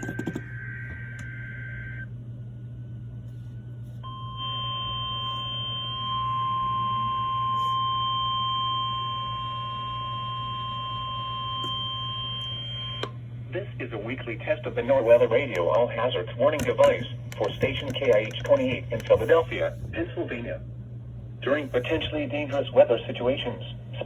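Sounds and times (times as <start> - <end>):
low hum: 0.0 - 24.0
steady high alarm tone: 4.0 - 13.0.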